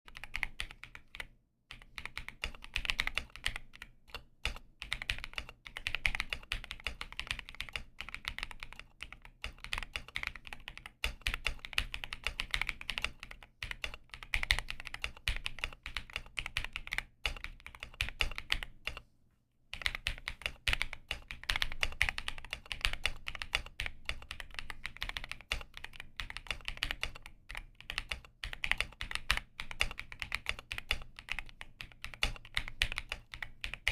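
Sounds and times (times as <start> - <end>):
computer keyboard typing: 0.1 - 19.0, 19.7 - 33.9.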